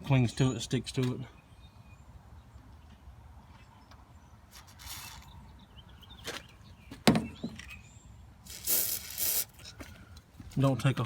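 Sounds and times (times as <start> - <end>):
grease hissing and scraping: 8.5 - 9.9.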